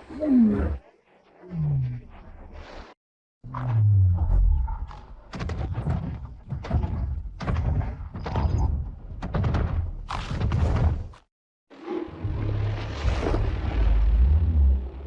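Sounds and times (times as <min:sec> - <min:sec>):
deep falling growl: 0:12.0 - 0:15.0.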